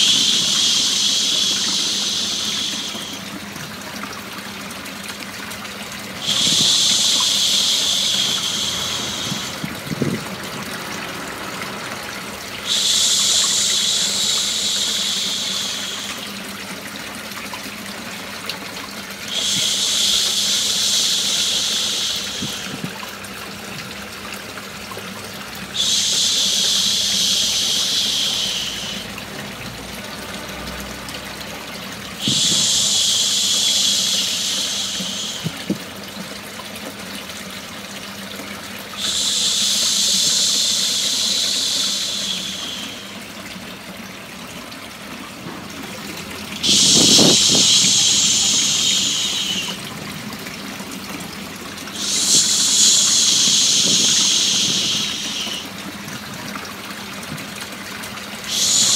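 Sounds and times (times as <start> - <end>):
shushing voice: 0.0 - 3.2, 25.8 - 29.2, 32.2 - 35.7, 39.0 - 43.1, 46.6 - 49.9, 52.0 - 55.7, 58.5 - 58.9
running water white noise: 0.0 - 58.9.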